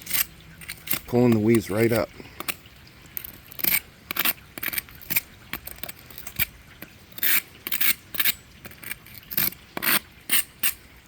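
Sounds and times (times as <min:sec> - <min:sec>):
metal hook scraping weeds: 0:00.0 - 0:10.9.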